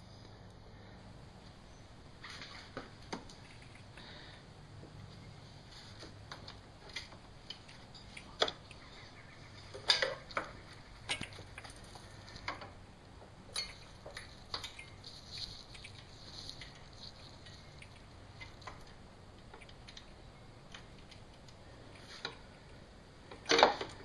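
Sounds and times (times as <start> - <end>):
hand tools clinking on metal parts: 9.8 - 12.7, 13.5 - 17.6.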